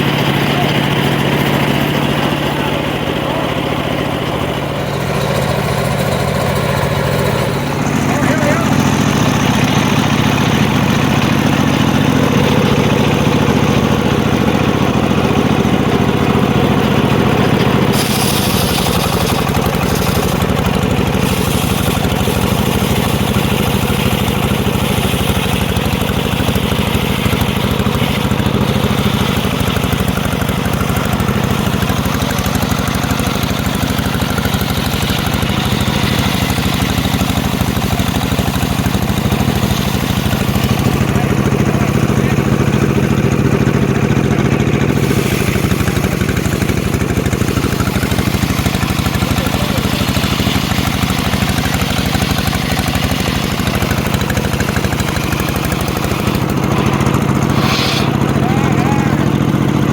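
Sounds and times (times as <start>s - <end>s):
sawmill engine running: 0.0s - 59.9s
harsh hissing noise: 56.8s - 58.6s.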